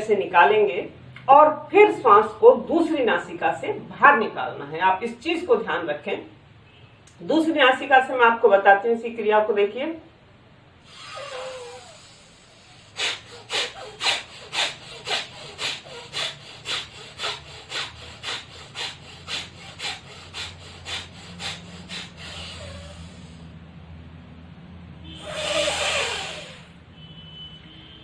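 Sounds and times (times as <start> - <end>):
forceful rhythmic nostril breaths: 10.8 - 23.6, 25.2 - 26.8.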